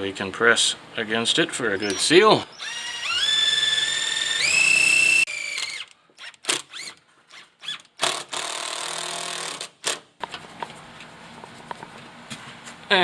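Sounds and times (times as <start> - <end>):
power drill driving a screw: 1.8 - 9.7.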